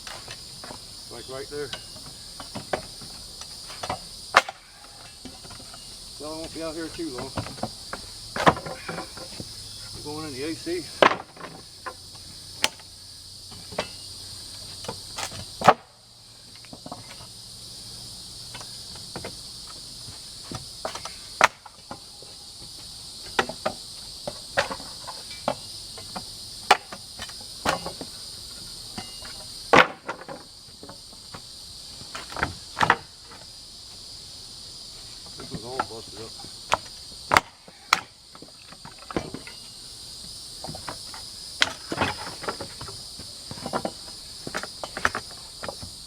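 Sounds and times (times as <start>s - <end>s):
insects chirring: 0.0s - 46.0s
wooden pallet cracking apart: 2.6s - 5.8s, 29.7s - 30.4s.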